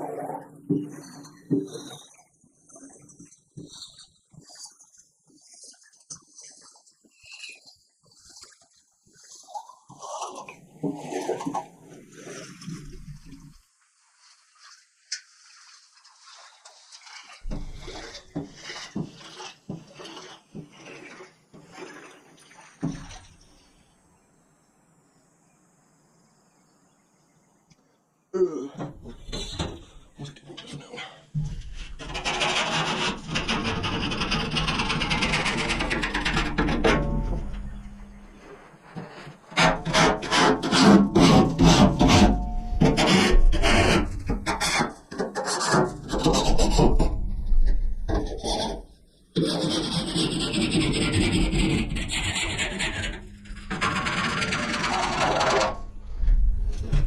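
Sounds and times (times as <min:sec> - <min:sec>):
water splashing and running: 0:00.0 - 0:24.0
rasping scraping of metal: 0:29.0 - 0:57.0.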